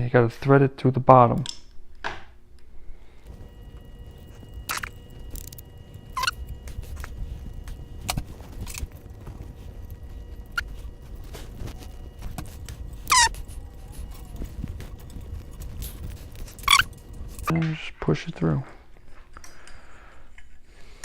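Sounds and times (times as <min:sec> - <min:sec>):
light clicks and rustles: 0:03.2 - 0:17.6
short squeak: 0:06.0 - 0:06.5.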